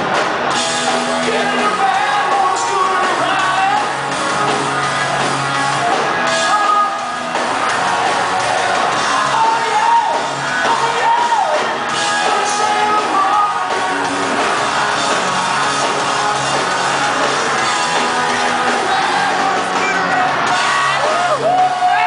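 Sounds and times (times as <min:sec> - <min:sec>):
live rock band: 0:00.0 - 0:22.0
person singing: 0:08.0 - 0:15.4.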